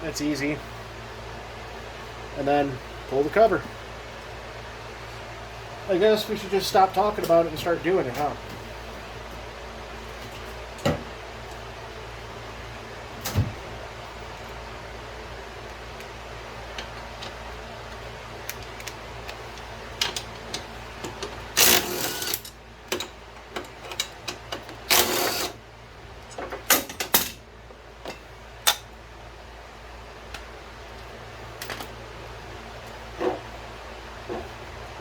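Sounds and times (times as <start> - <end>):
ratchet turning: 21.6 - 22.5, 24.9 - 25.6.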